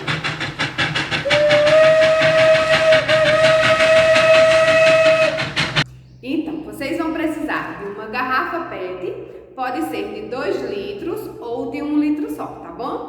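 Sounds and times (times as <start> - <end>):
steam locomotive chuffing: 0.0 - 5.9
steam whistle blast: 0.8 - 5.8.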